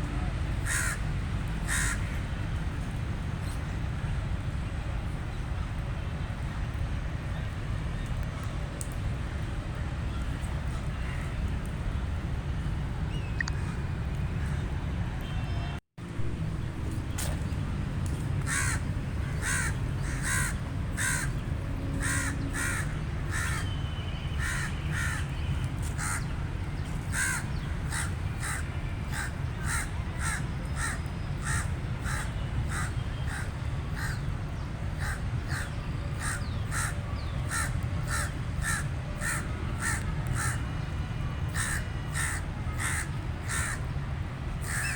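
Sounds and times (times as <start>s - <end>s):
crow cawing: 0.7s - 1.0s, 1.7s - 2.1s, 18.5s - 21.3s, 22.0s - 23.6s, 24.4s - 25.2s, 27.2s - 28.6s, 37.5s - 40.6s, 41.6s - 43.8s
steady low rumble: 16.0s - 23.2s.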